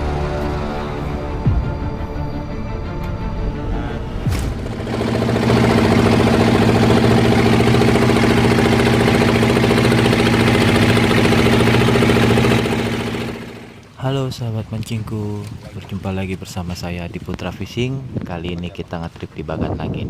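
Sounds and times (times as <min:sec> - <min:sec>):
boat engine knocking: 0:04.4 - 0:13.8.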